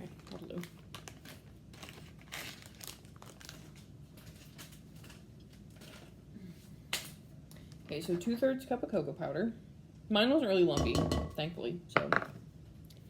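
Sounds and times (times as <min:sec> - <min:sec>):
packaging crinkling and rustling: 0:00.0 - 0:06.2.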